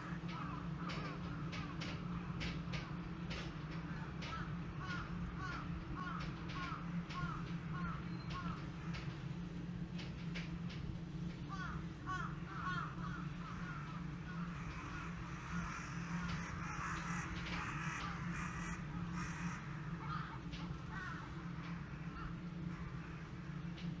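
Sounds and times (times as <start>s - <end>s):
crows cawing: 0.0s - 3.0s, 3.7s - 9.1s, 11.4s - 23.9s
steady low hum: 0.0s - 24.0s.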